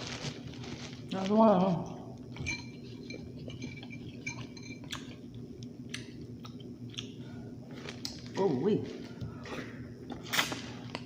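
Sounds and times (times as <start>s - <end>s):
person chewing food: 1.9s - 8.3s.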